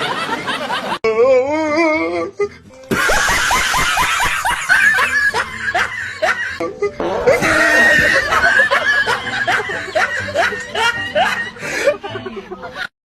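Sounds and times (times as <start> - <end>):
snickering laughter: 2.8 - 12.9.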